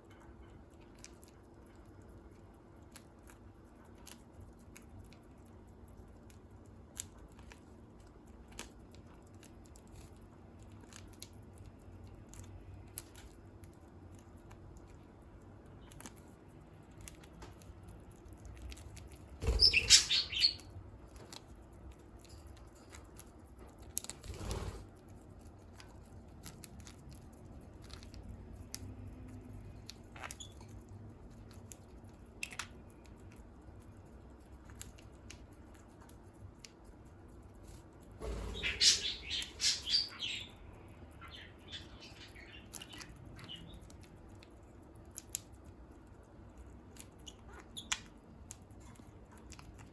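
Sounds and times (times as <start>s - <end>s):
birds chewing leaves: 0.1s - 49.9s
budgie chirp: 19.4s - 20.6s, 38.4s - 40.6s.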